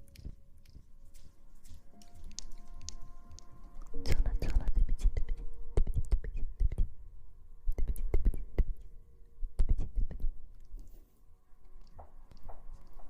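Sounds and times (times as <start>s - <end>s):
sharp clicks and taps: 0.0s - 3.6s, 11.8s - 13.0s.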